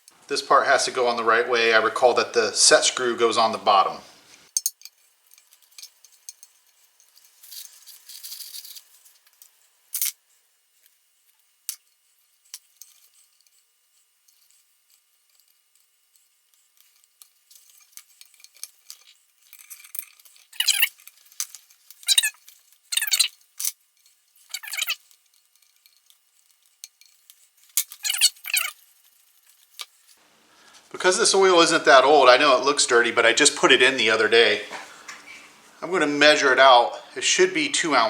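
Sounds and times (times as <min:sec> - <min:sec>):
metal parts clicking and tapping: 0:04.5 - 0:10.2, 0:10.8 - 0:30.2
short wavering squeaks: 0:20.4 - 0:21.0, 0:22.0 - 0:23.4, 0:24.4 - 0:25.1, 0:27.9 - 0:28.9.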